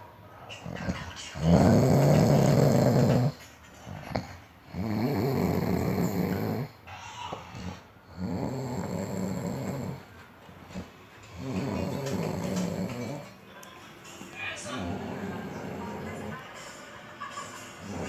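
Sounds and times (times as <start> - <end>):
quiet breathing: 0.0 - 13.5, 14.1 - 16.8
deep rattling snoring: 0.6 - 6.8, 7.5 - 13.4, 14.7 - 16.4.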